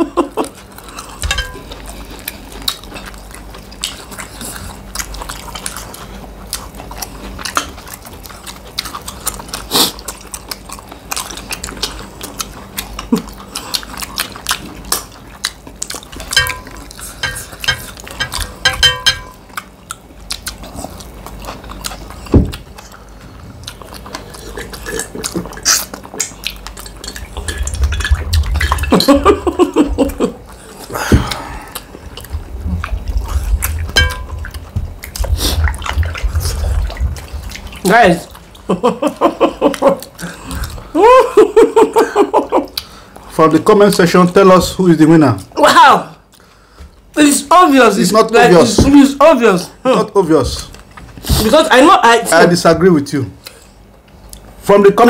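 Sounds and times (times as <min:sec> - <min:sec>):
utensils clinking on a plate: 0:01.1 - 0:01.9, 0:16.2 - 0:19.4, 0:33.9 - 0:34.4.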